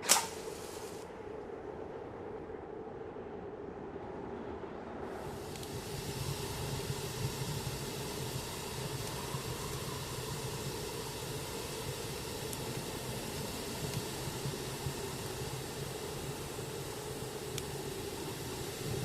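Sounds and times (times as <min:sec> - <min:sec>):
wood fire crackling: 0:00.0 - 0:01.0, 0:05.1 - 0:19.0
rushing blizzard wind: 0:00.0 - 0:19.0.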